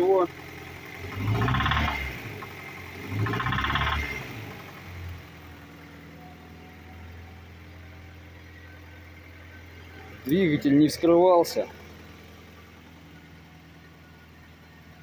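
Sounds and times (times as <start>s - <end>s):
car engine revving with rattling knock: 0.0s - 5.9s
car engine idling: 0.0s - 15.0s.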